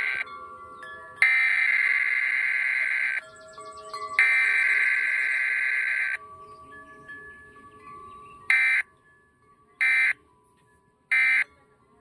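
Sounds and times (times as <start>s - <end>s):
faint steady tones: 0.0s - 12.0s
digital data screech bursts: 1.2s - 3.2s, 4.2s - 6.2s.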